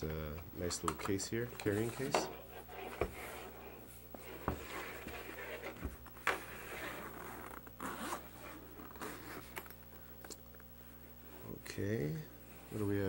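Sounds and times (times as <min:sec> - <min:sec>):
zipper pulled open: 0:06.4 - 0:09.7.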